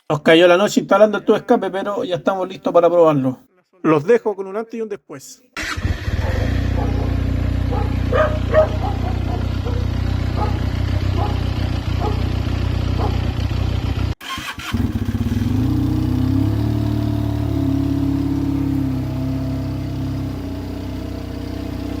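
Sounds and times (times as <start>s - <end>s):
motorcycle engine idling: 5.9s - 22.0s.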